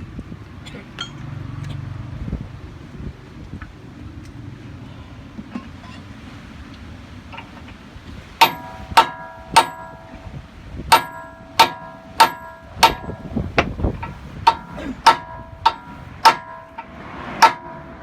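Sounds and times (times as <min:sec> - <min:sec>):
hammer clanging on steel: 0:08.4 - 0:18.0.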